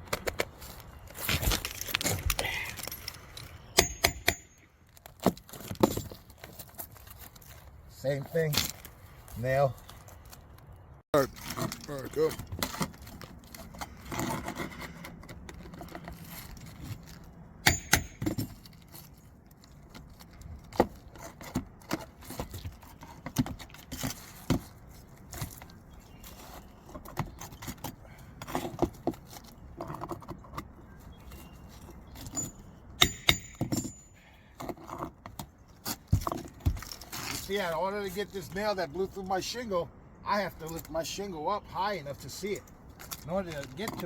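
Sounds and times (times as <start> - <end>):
metal tool scraping under shingle: 0.5 - 10.2, 11.2 - 38.4.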